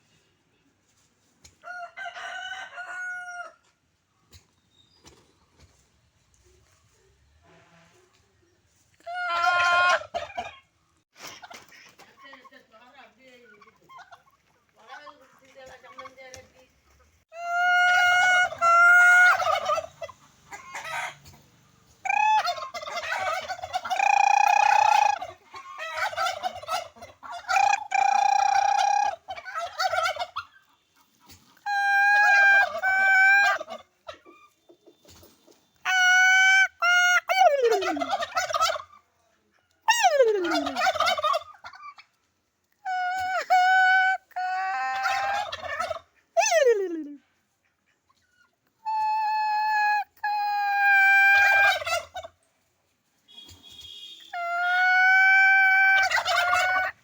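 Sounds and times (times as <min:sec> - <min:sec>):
turkey calling: 0:09.1 - 0:10.7, 0:13.4 - 0:15.1, 0:17.4 - 0:39.1, 0:39.9 - 0:42.2, 0:42.8 - 0:52.4, 0:53.3 - 0:57.0.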